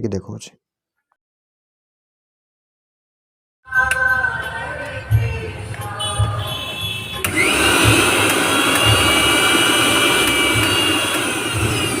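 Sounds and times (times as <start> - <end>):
background music with beat: 3.7 - 12.0
mixer grinder motor whine: 7.2 - 12.0.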